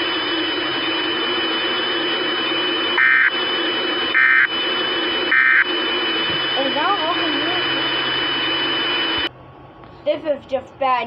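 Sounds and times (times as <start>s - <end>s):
radio static hiss: 0.0s - 9.3s
shrill digital data bursts: 2.9s - 3.4s, 4.1s - 4.6s, 5.3s - 5.7s.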